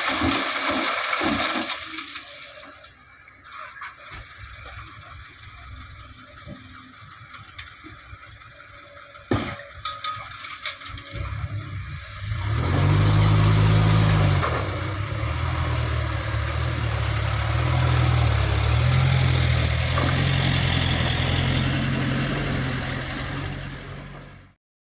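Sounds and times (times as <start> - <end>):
heavy diesel engine revving: 11.1 - 24.6.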